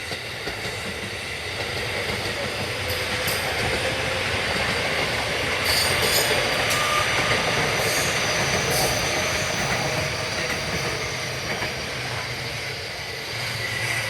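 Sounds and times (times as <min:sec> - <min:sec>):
electric train rumbling: 0:00.0 - 0:14.0
faint squealing whines: 0:05.7 - 0:12.7.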